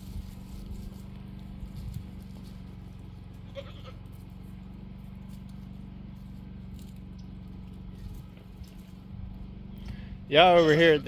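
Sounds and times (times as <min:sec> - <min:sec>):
steady low hum: 0:00.0 - 0:11.0
goat bleating: 0:03.3 - 0:04.2, 0:10.3 - 0:11.0.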